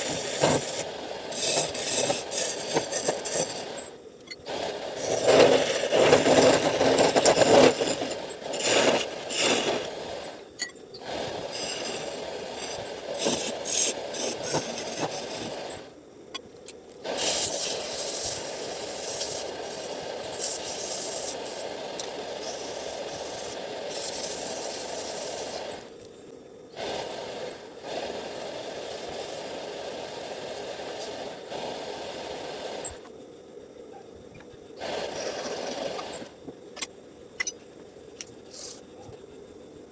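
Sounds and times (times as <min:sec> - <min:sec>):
hand tool rasping wood: 0:00.0 - 0:03.6, 0:05.0 - 0:09.9.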